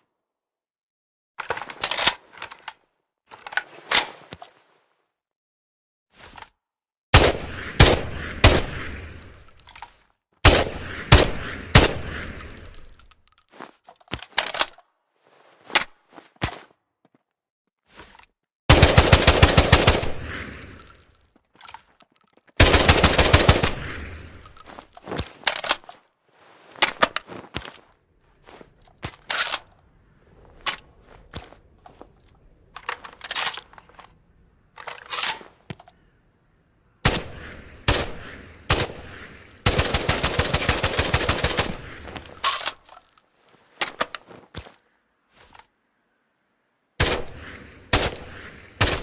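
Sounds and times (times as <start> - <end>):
rifle single shots: 7.2 - 9.1, 10.4 - 12.4
rifle automatic fire: 18.7 - 20.5, 22.6 - 24.1, 37.0 - 41.9.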